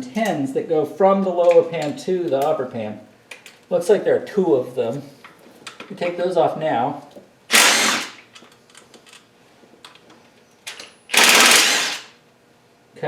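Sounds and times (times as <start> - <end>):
power tool rattling bursts: 7.5 - 8.3, 10.7 - 12.2.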